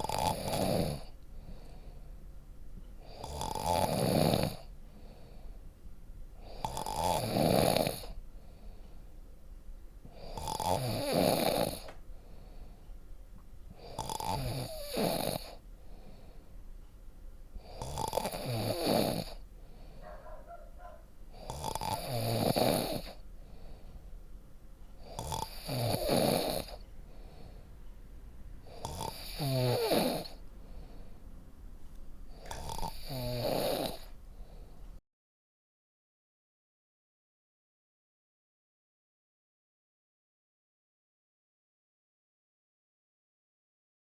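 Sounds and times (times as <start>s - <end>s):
person snoring: 0.0s - 1.8s, 3.0s - 5.3s, 6.4s - 8.2s, 10.1s - 11.9s, 13.8s - 15.6s, 17.6s - 19.4s, 21.3s - 23.2s, 25.0s - 26.8s, 28.7s - 30.4s, 32.3s - 34.2s.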